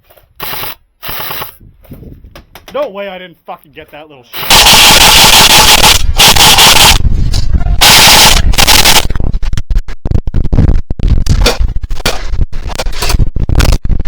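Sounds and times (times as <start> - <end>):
electric rifle firing clicks: 0.4 - 1.6
wind buffeting microphone: 1.6 - 2.6, 6.9 - 7.8.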